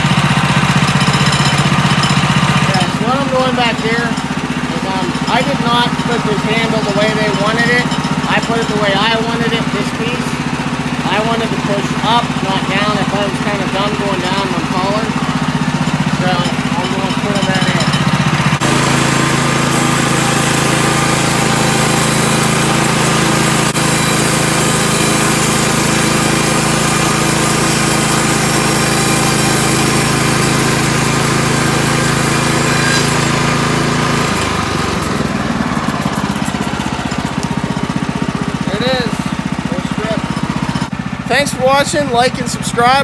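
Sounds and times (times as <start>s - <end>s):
band saw blade whirring: 0.0s - 43.0s
gas engine running: 0.0s - 43.0s.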